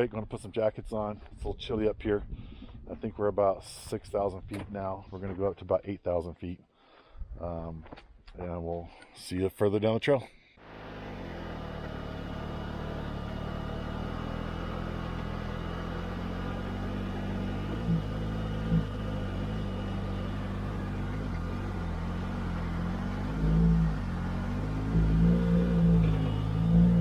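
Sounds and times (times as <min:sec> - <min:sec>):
vehicle engine running: 0:10.6 - 0:27.0.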